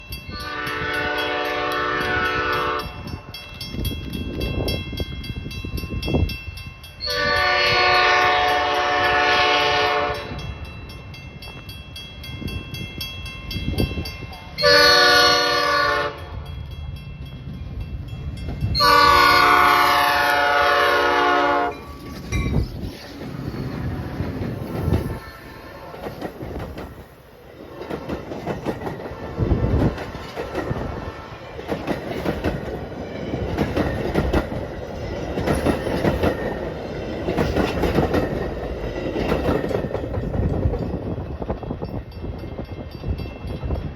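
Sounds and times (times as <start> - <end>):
train rumble: 0.0 - 43.9
locomotive air horn blasts: 0.3 - 3.2, 7.0 - 10.4, 14.6 - 16.4, 18.8 - 21.8
train wheel clatter: 21.5 - 43.9.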